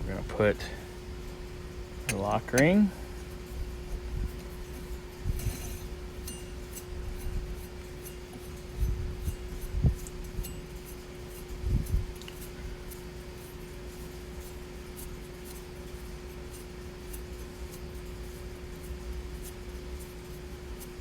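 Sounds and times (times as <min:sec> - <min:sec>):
steady hum: 0:00.0 - 0:15.0.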